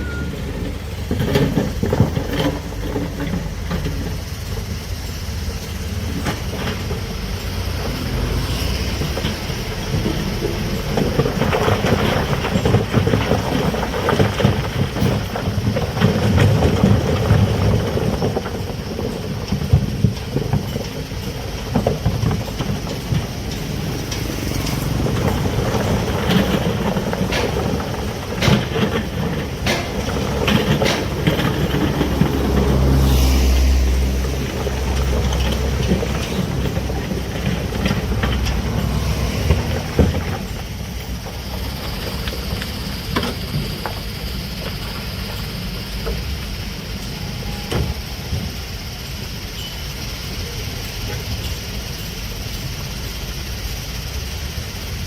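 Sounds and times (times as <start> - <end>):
excavator diesel engine under load: 0.0 - 55.0
metallic clanks and knocks: 9.0 - 33.1, 34.0 - 44.1.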